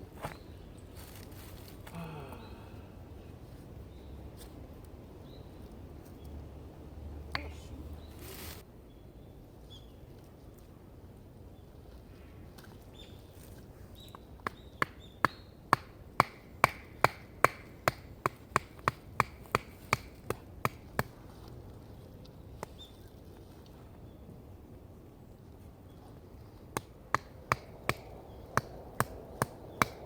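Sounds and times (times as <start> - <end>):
sharp knocks: 14.8 - 20.8.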